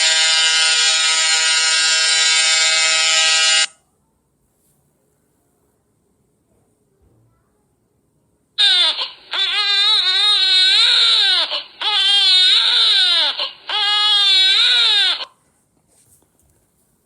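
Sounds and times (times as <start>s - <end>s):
baby crying: 8.6s - 15.3s.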